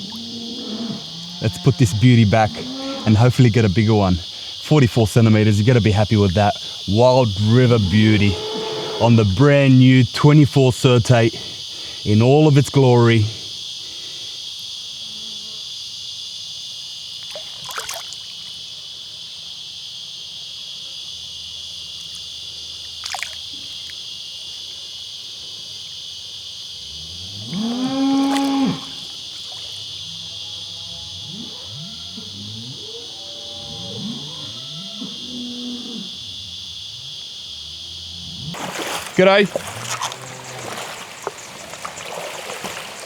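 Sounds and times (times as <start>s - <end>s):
cattle mooing: 0.0s - 4.2s, 6.9s - 10.0s, 27.2s - 29.1s, 38.3s - 43.0s
high drone of insects: 0.0s - 43.0s.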